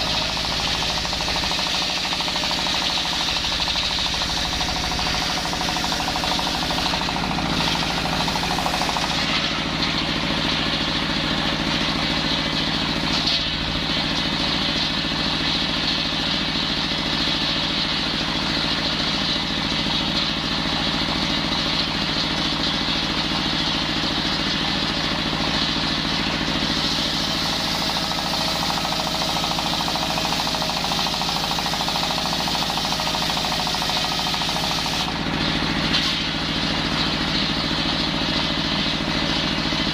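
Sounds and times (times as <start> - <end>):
circular saw cutting wood: 0.0 - 16.0, 25.5 - 39.9.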